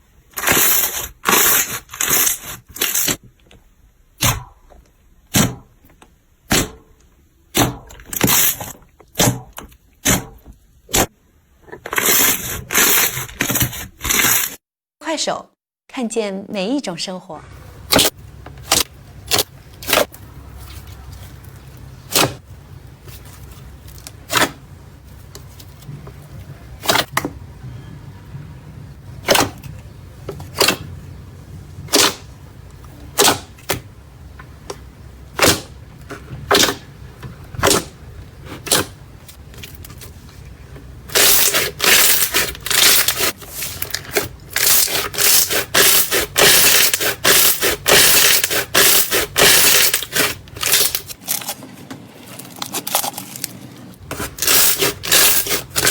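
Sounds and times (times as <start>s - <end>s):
slime crackling and crunching: 41.1s - 55.9s.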